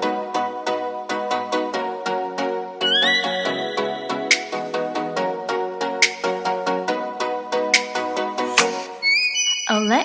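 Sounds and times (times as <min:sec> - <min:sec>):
electronic pop music: 0:00.0 - 0:10.0
high whistle-like tone: 0:09.0 - 0:09.9.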